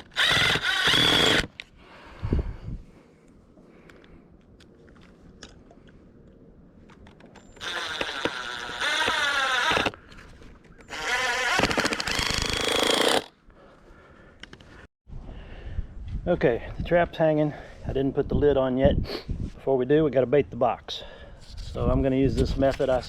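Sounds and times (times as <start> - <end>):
power drill driving screws: 0.0 - 1.6, 7.5 - 10.0, 10.8 - 13.3.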